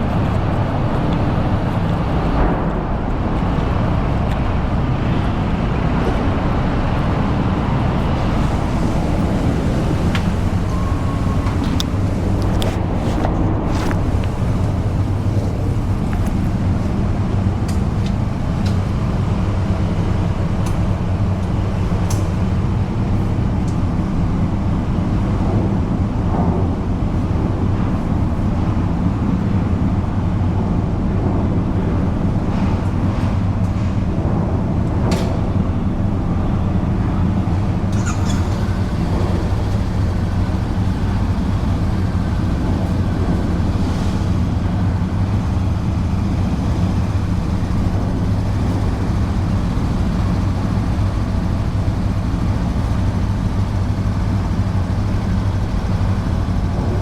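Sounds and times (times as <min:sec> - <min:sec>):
motorcycle engine running steadily: 0:04.4 - 0:23.5, 0:36.6 - 0:57.0.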